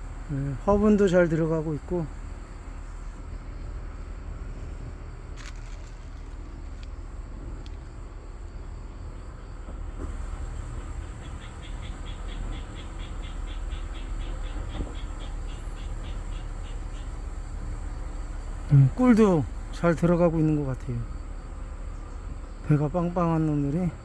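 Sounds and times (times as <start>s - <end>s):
insect chirping rapidly: 0.0s - 24.0s
steady low rumble: 0.0s - 24.0s
bees buzzing around hive: 10.1s - 18.9s.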